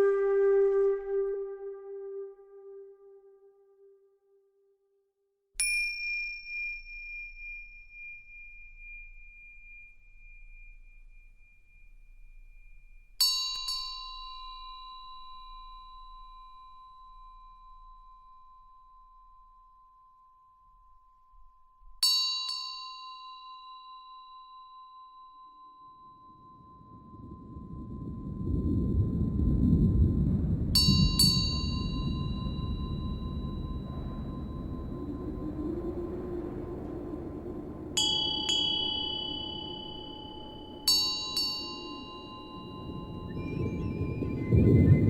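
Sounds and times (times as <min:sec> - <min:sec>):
small meditation bell ringing: 0:05.6 - 0:28.4, 0:30.8 - 0:44.5
steady pure tone: 0:25.8 - 0:45.0
soft low drone: 0:26.0 - 0:45.0
low rumble: 0:26.1 - 0:45.0.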